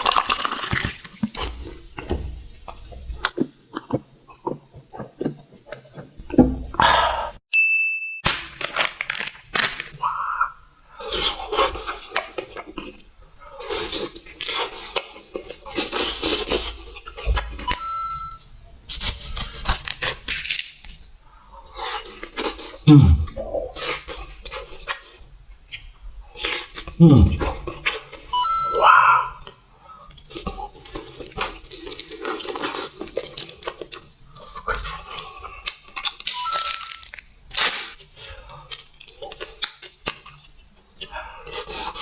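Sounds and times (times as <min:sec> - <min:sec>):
snack packaging crinkling: 0:00.0 - 0:01.8, 0:08.3 - 0:10.0, 0:18.9 - 0:21.0, 0:29.4 - 0:42.0
crunching and chewing: 0:00.0 - 0:06.8, 0:11.0 - 0:17.8, 0:21.6 - 0:28.3, 0:28.9 - 0:42.0.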